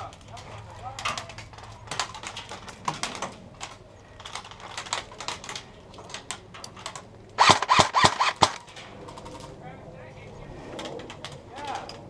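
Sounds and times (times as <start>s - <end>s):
airsoft guns firing: 7.4s - 8.7s.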